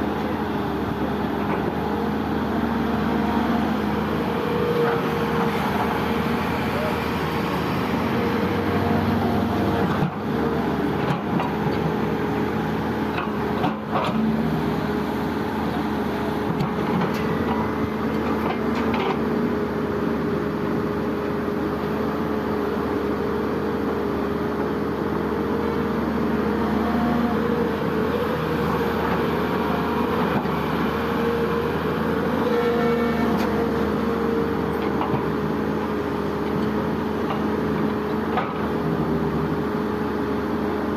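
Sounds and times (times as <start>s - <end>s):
heavy machinery engine droning: 0.0s - 40.9s.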